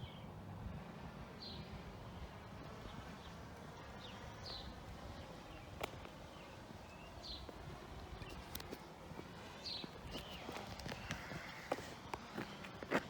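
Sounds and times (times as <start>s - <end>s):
bird chirping: 0.0s - 0.4s, 1.4s - 8.8s, 9.4s - 12.6s.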